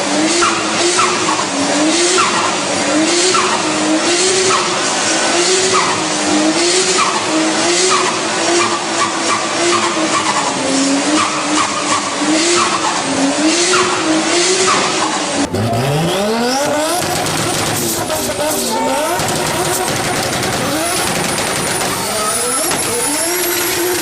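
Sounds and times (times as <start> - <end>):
car engine at high revs: 0.0 - 24.0
car engine revving up: 0.0 - 24.0
tyres squealing: 15.5 - 24.0.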